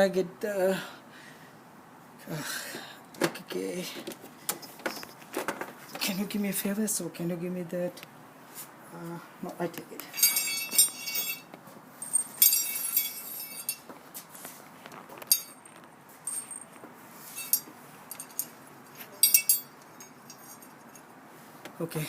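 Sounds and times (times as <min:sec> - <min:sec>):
metal tools clinking: 0:10.1 - 0:13.9, 0:15.2 - 0:21.1.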